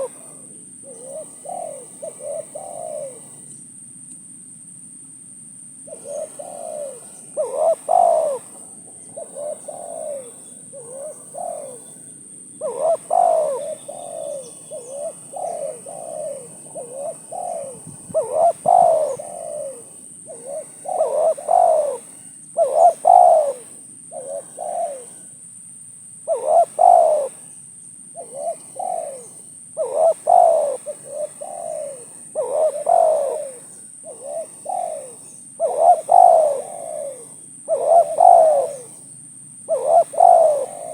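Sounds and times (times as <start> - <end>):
dove cooing: 0.0 - 3.5, 5.8 - 25.4, 26.2 - 40.9.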